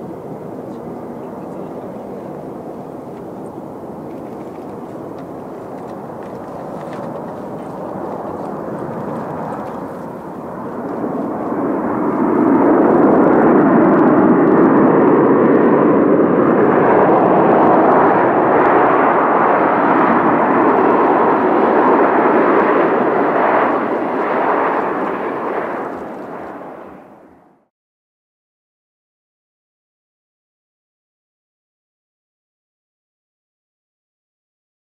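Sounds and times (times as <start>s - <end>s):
jet engines roaring: 0.0s - 27.7s.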